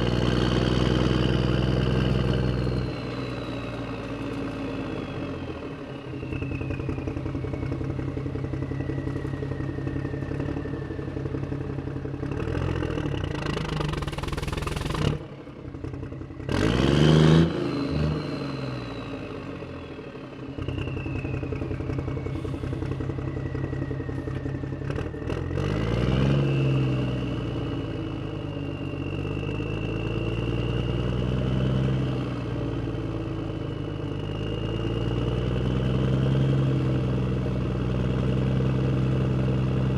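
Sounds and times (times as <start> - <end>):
vehicle engine revving: 12.3 - 15.2, 16.4 - 18.9, 21.5 - 27.4
high whine: 20.6 - 27.6.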